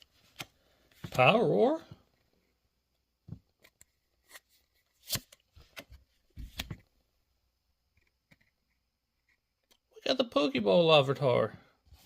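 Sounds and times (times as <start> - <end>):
trading cards snapping and rustling: 4.2 - 6.8.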